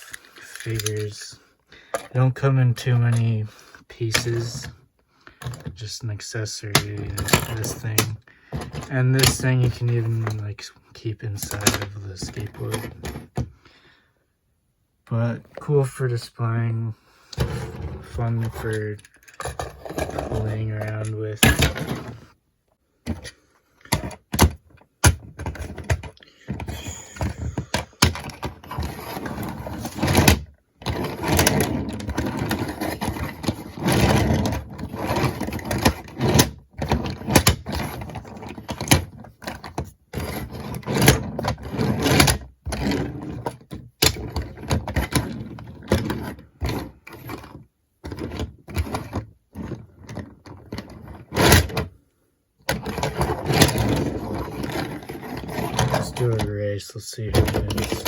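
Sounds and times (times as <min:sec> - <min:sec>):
toy skateboards rolling and clattering: 0:00.0 - 0:01.3, 0:06.7 - 0:10.4, 0:11.4 - 0:13.4, 0:17.4 - 0:22.2, 0:52.7 - 0:56.6, 0:57.2 - 0:58.0
knocks and clicks of handling: 0:04.1 - 0:05.8, 0:23.0 - 0:51.9, 0:57.3 - 0:58.0.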